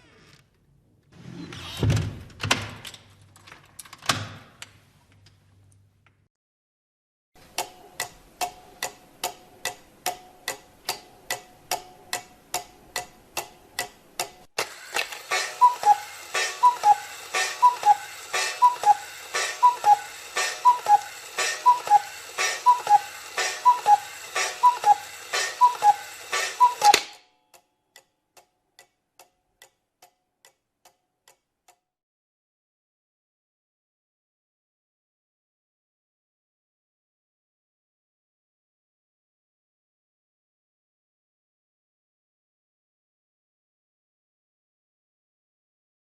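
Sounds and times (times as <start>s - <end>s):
mechanical clock ticking: 7.4s - 14.5s, 15.2s - 31.9s.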